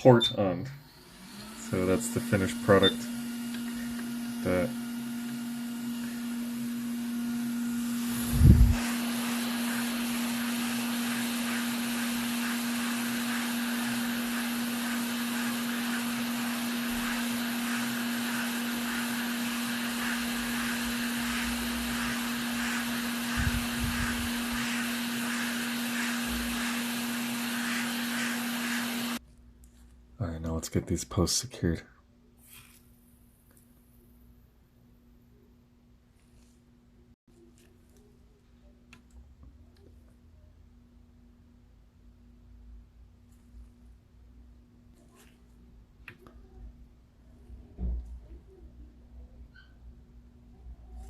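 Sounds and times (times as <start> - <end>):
electric fan whirring: 0.0 - 29.2.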